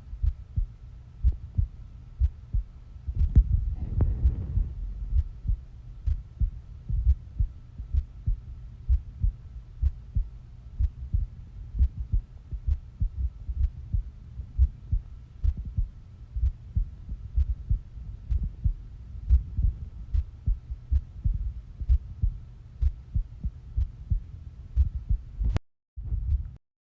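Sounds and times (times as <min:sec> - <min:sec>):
faint steady hum: 0:00.0 - 0:26.6
heartbeat thumps: 0:00.0 - 0:26.6.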